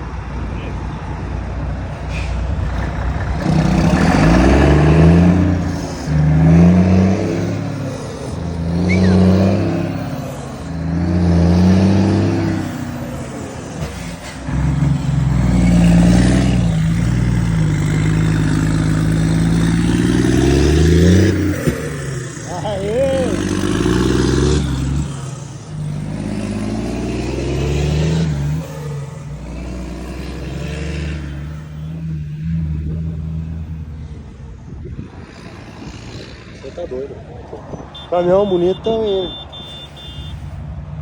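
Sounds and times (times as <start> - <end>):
diesel truck engine revving: 0.0 - 41.0.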